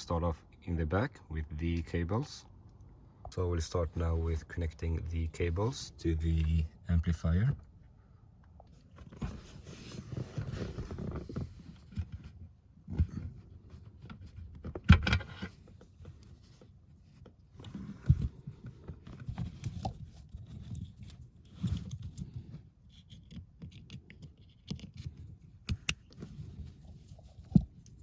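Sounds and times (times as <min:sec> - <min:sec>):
cables and connectors handled: 0:08.5 - 0:28.0.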